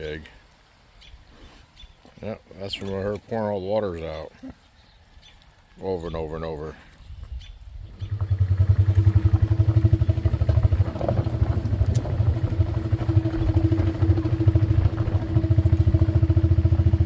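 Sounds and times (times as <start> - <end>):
small engine running: 8.0 - 17.0.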